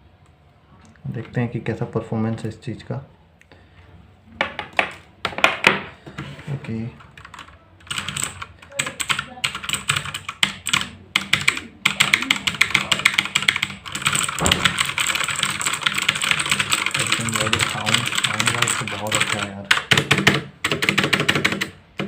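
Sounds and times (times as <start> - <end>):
mechanical keyboard typing: 7.0 - 22.0.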